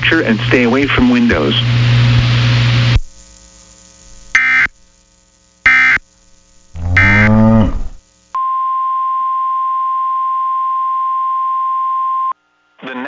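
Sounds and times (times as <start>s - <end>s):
digital data screech: 6.8s - 7.6s
low sound falling in pitch: 6.8s - 8.0s
steady warning alarm tone: 6.8s - 8.0s.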